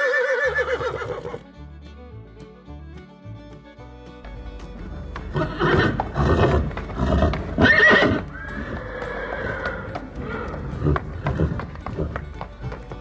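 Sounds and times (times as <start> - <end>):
horse neighing: 0.0 - 1.4, 5.3 - 12.2.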